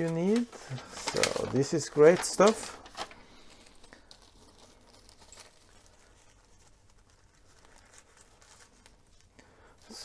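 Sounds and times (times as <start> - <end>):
faint clicks and rustles of packaging: 0.0 - 10.0.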